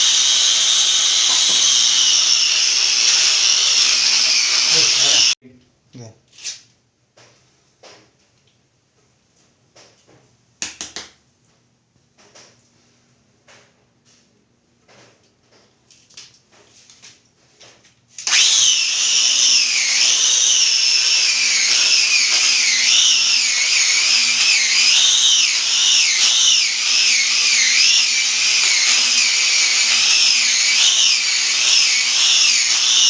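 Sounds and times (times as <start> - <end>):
power tool whining on stone: 0.0 - 5.4, 18.2 - 33.0.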